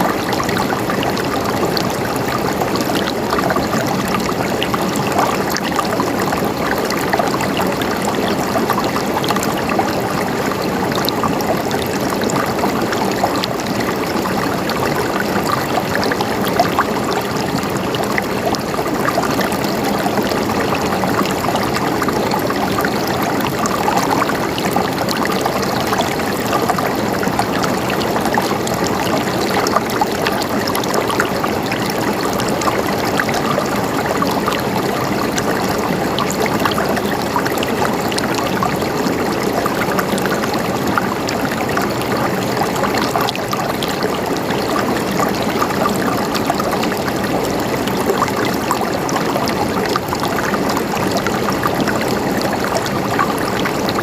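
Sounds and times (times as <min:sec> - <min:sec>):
stream water splashing and gurgling: 0:00.0 - 0:54.0.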